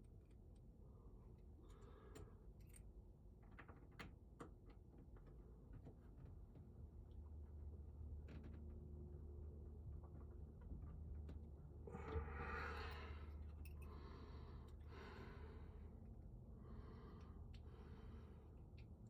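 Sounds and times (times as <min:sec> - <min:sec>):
low steady hum: 0:06.8 - 0:19.0
person sighing heavily: 0:11.9 - 0:13.2.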